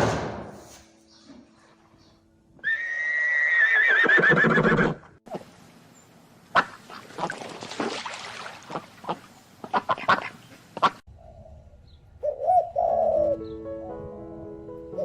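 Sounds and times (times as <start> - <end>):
pigeon cooing: 12.2 - 13.6
background music: 12.8 - 15.0.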